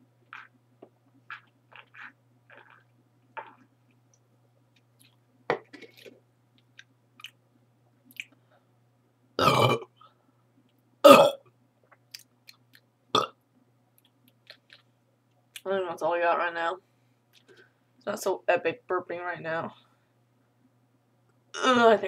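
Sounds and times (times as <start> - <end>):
girl burping: 9.4 - 9.9, 11.0 - 11.4, 21.6 - 22.0.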